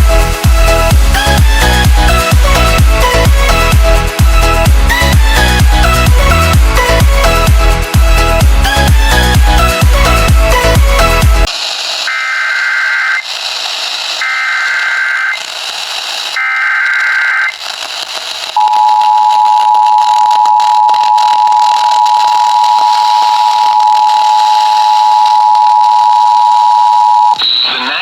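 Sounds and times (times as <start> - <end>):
radio hiss: 11.5 - 28.0
screechy digital data bursts: 11.5 - 28.0
two-tone attention signal: 18.6 - 28.0.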